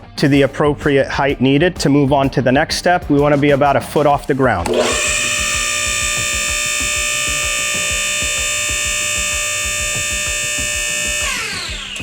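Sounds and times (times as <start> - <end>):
hydraulic pump motor whining: 4.6 - 12.0.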